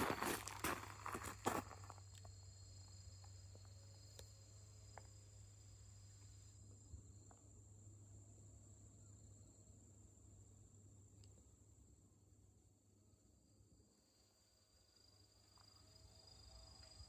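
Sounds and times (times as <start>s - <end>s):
rustling footsteps: 0.0s - 2.0s
insects trilling: 0.0s - 7.4s, 13.4s - 17.0s.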